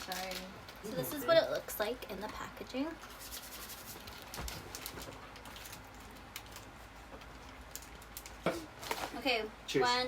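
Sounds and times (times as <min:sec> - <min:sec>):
snack packaging crinkling: 0:00.0 - 0:00.9, 0:03.3 - 0:09.1.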